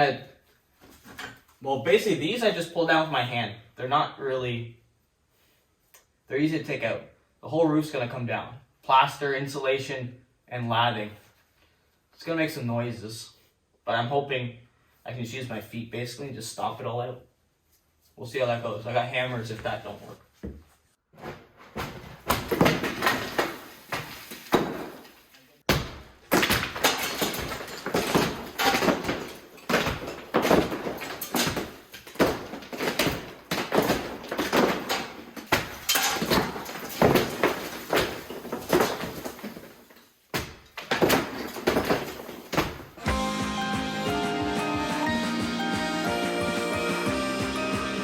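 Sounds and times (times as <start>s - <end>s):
plaster crashing down: 21.2s - 43.2s.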